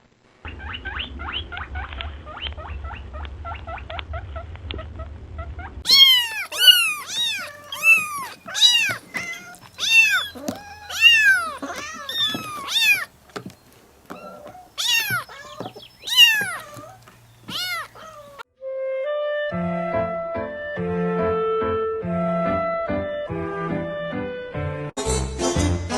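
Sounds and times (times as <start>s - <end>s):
low hum: 0.3s - 7.0s
cat meowing: 5.9s - 18.4s.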